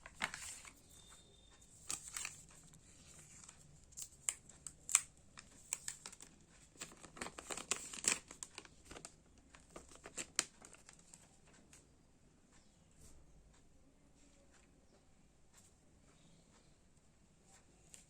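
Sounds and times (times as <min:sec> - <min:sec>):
plastic and paper crinkling: 0:00.0 - 0:11.6.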